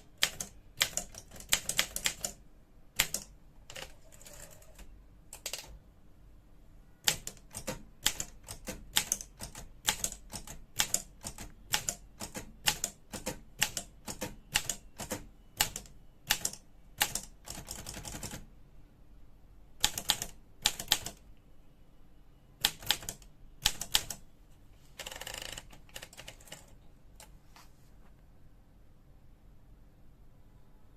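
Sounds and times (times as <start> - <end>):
longer typewriter noise: 0.0 - 2.4, 3.0 - 5.8, 7.1 - 18.4, 19.8 - 21.2, 22.6 - 24.2, 25.0 - 27.3
typewriter keystrikes: 0.2 - 2.4, 7.1 - 18.4.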